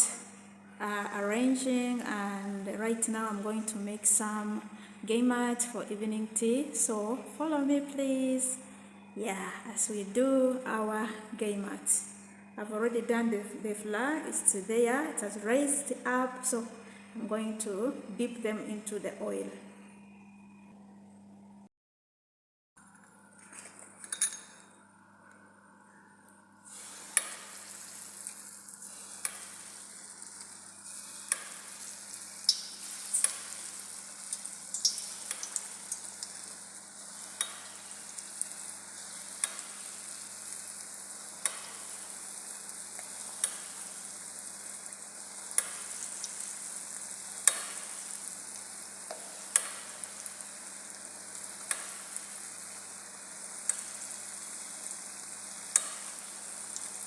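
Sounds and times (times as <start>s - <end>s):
oil sizzling: 26.6s - 57.0s
sharp pops of frying: 26.8s - 57.0s.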